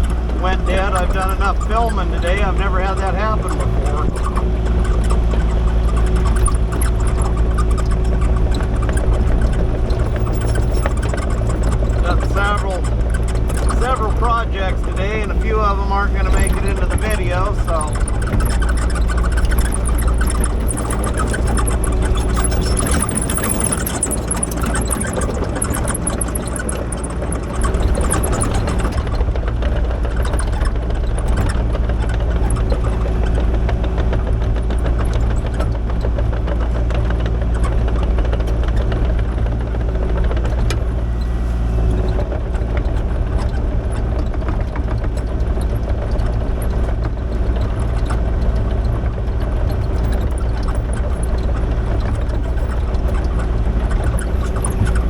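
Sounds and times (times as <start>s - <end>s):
clattering and rattling: 0.0s - 55.0s
excavator diesel engine running: 0.0s - 55.0s.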